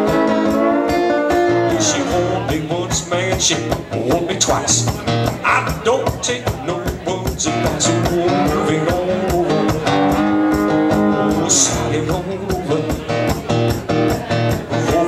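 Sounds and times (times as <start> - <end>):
acoustic slide guitar: 0.0 - 15.0.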